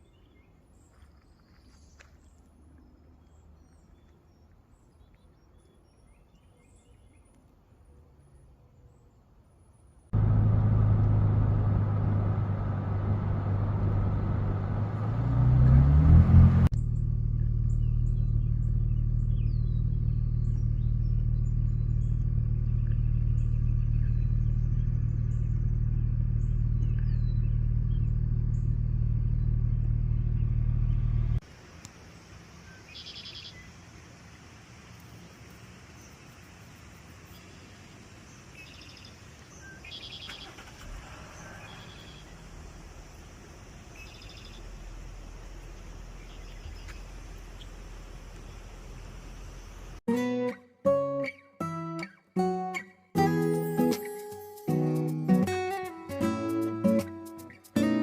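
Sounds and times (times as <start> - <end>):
birds chirping: 0.0 - 50.0
vehicle engine running: 10.1 - 35.9, 39.4 - 50.0.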